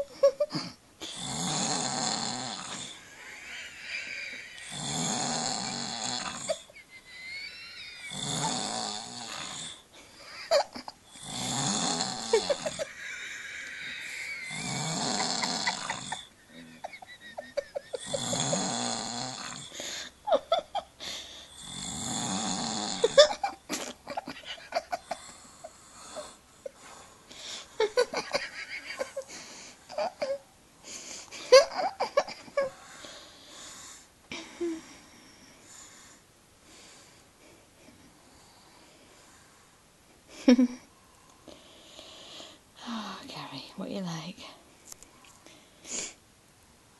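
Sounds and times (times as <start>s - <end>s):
man snoring: 1.0s - 6.7s, 7.9s - 9.8s, 11.1s - 19.9s, 21.4s - 23.4s.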